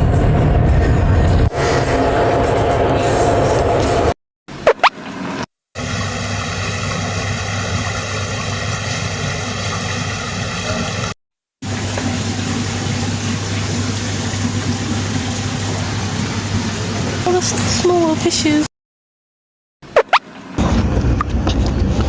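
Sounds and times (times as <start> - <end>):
low hum: 0.0 - 4.2
mechanical hum with whine: 0.0 - 4.2
steady rushing noise: 0.0 - 4.2.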